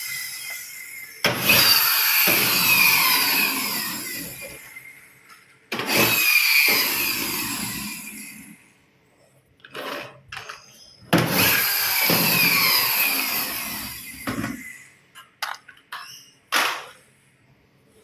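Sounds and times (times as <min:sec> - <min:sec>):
toy train whirring on track: 0:00.0 - 0:08.5.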